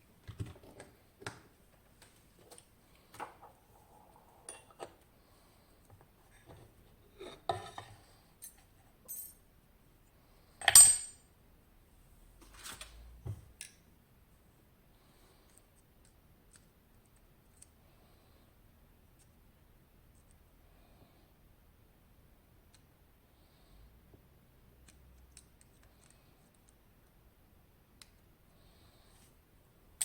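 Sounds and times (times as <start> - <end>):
metal lock parts clinking: 10.6 - 11.2.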